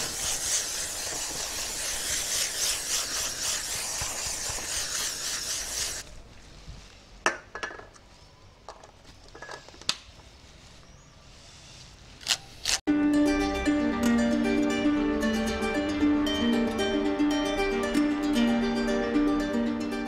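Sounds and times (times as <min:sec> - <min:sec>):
spray hissing: 0:00.0 - 0:06.0.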